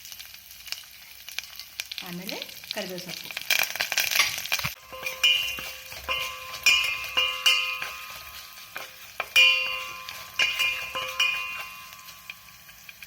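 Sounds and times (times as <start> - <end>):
hot oil sizzling: 0.0 - 13.0
metal spoon clinking on pan: 4.1 - 13.0.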